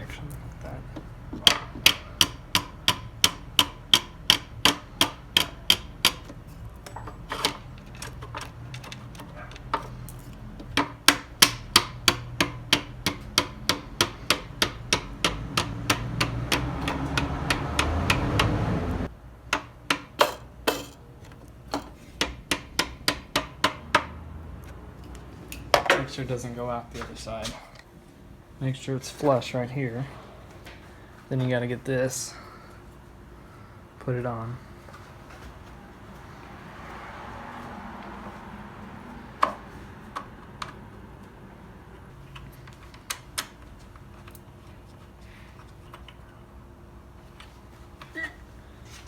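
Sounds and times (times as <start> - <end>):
mallet tapping metal rod: 1.4 - 6.3, 10.8 - 18.6.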